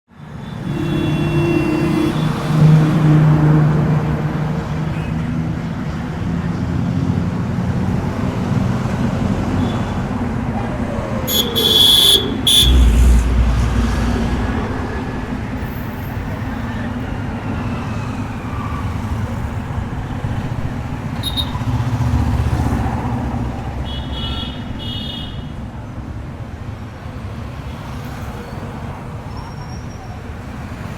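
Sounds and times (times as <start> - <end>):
road traffic passing: 0.1 - 30.9
short high-pitched sounds: 11.4 - 14.6
deep low rumble: 12.4 - 15.7.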